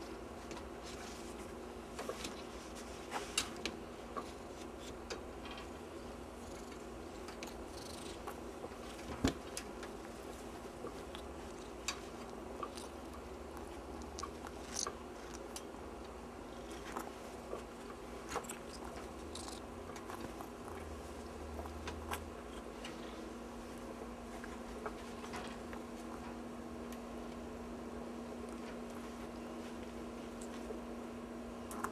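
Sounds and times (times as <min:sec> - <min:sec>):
steady low hum: 0:00.0 - 0:31.9
kitten playing clicks and taps: 0:18.3 - 0:20.5.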